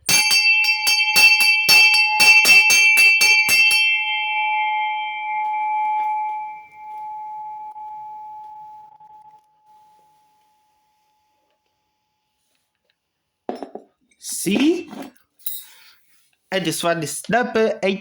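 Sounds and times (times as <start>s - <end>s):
hand bell ringing: 0.0s - 8.9s.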